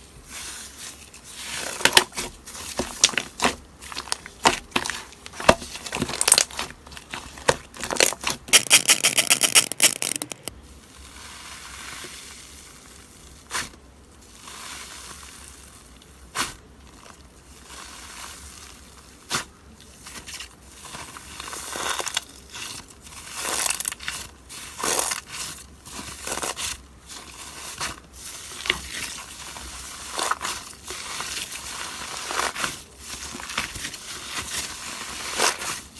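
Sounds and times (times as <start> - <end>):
hamster crunching and rustling: 0.0 - 35.9
fast small ticks: 8.5 - 10.5.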